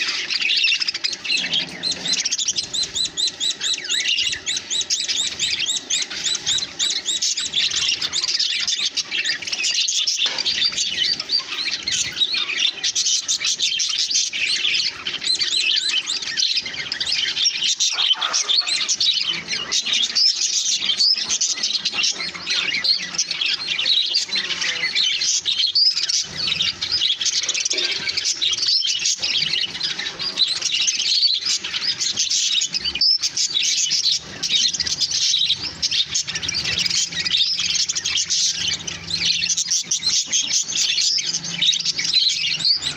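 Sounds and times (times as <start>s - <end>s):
budgies chirping and chattering: 0.0s - 42.9s.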